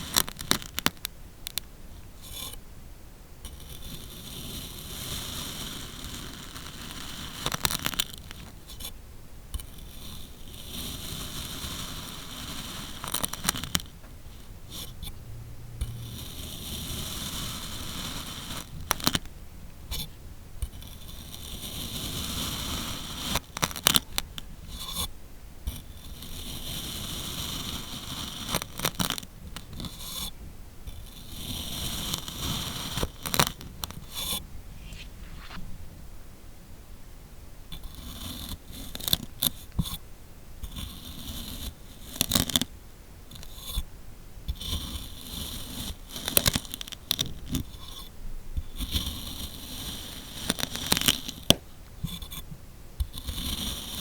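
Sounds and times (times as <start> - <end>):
blade scraping gritty sand: 31.0 - 35.7.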